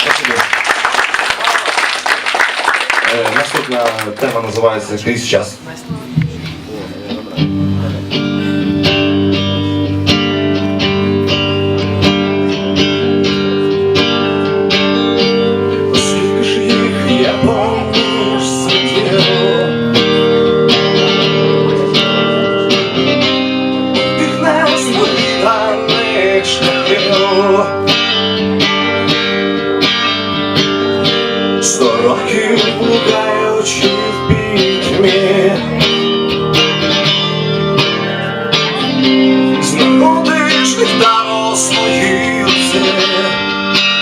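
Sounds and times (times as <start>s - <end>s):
live band playing: 5.6s - 44.0s
strummed guitar chords: 5.6s - 44.0s.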